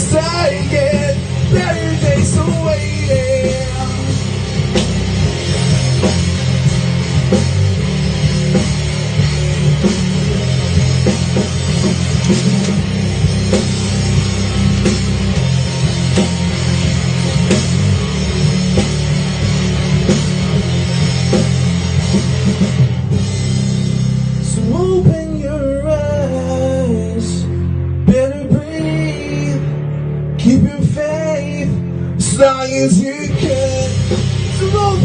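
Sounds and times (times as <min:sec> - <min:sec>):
steady drum beat: 0:00.0 - 0:25.2, 0:32.2 - 0:35.0
rock band playing: 0:00.0 - 0:35.0.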